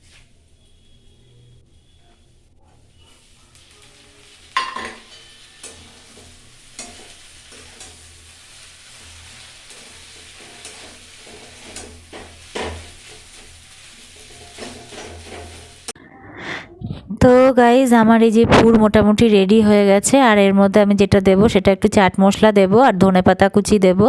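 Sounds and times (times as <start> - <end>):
utensil scraping a pan: 0.0 - 16.0
food sizzling in a pan: 0.1 - 16.0.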